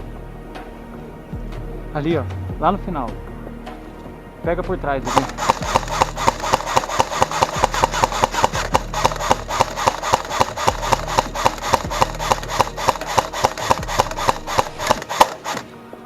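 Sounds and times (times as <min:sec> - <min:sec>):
quick footsteps: 0:05.1 - 0:15.6.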